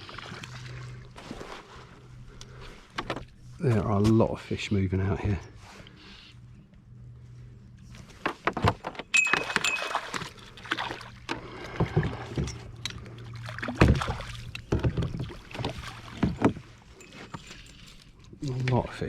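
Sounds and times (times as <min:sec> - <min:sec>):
water splashing against boat: 0:00.0 - 0:04.2, 0:08.1 - 0:19.0
knocks and clatter in boat: 0:02.7 - 0:04.3, 0:08.0 - 0:19.0.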